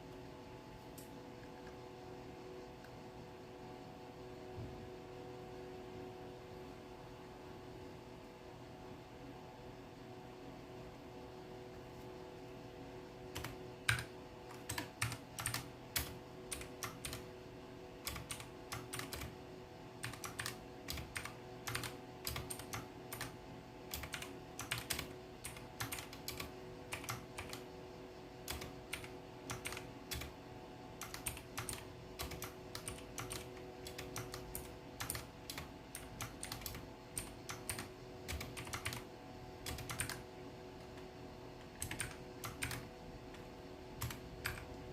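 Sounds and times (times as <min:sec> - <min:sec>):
faint steady hum: 0:00.0 - 0:44.9
mechanical keyboard typing: 0:13.3 - 0:17.3, 0:18.0 - 0:19.4, 0:20.0 - 0:27.7, 0:28.4 - 0:30.4, 0:31.0 - 0:40.2, 0:41.7 - 0:42.9, 0:44.0 - 0:44.8.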